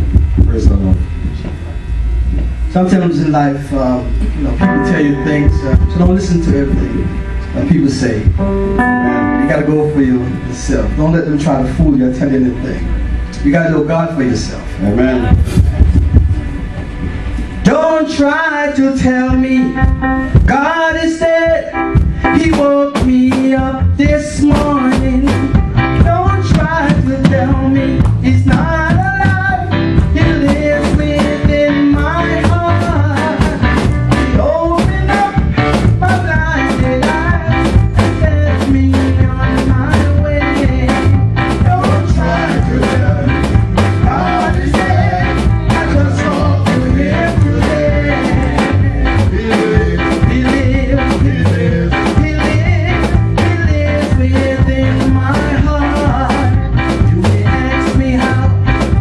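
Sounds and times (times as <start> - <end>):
upbeat gospel music: 0.0 - 59.0
person singing: 4.6 - 10.4, 17.6 - 58.9.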